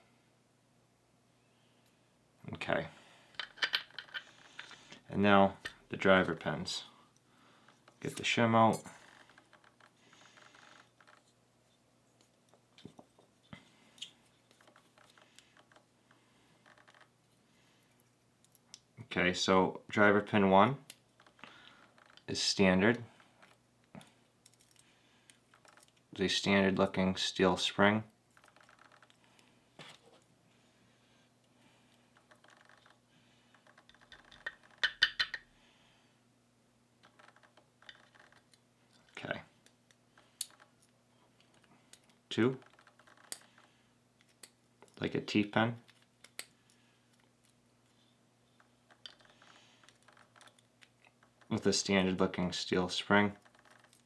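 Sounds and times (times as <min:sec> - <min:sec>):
small metal lock parts clicking: 0:03.4 - 0:04.8, 0:23.4 - 0:26.0, 0:37.0 - 0:43.6, 0:44.2 - 0:45.0, 0:45.8 - 0:47.6, 0:48.6 - 0:51.5, 0:53.4 - 0:54.0.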